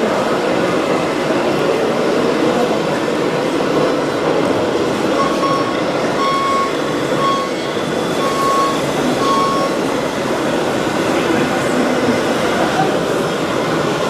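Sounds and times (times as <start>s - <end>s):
steady background noise: 0.0s - 14.0s
reversing beeper short beeps: 5.2s - 9.8s.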